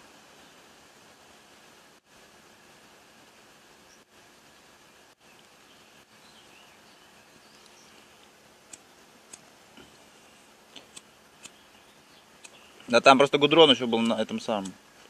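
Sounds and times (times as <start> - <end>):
faint sharp clicks: 7.6 - 10.0, 10.7 - 11.6, 12.4 - 12.9, 14.0 - 14.8.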